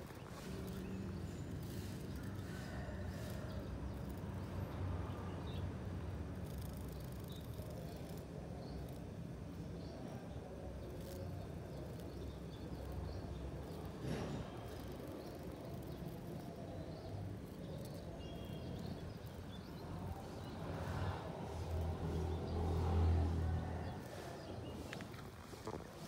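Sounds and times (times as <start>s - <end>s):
vehicle engine hum: 10.7s - 26.0s.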